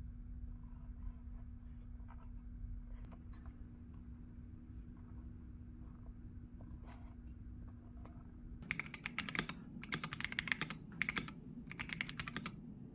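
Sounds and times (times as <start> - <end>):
mechanical keyboard typing: 8.6 - 12.6.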